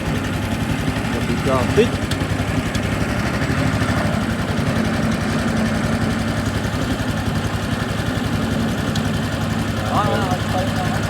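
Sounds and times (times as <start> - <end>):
small boat engine running: 0.0 - 11.0.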